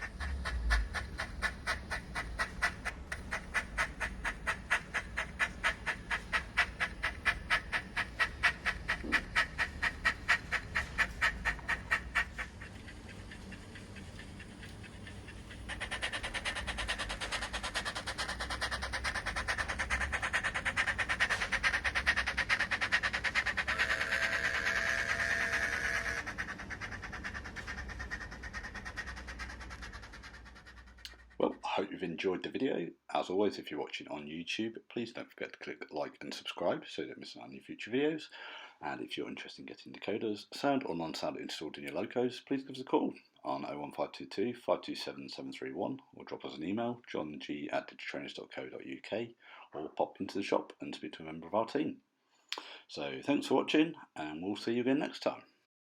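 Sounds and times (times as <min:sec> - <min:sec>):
model steam locomotive chuffs: 0:00.0 - 0:31.4.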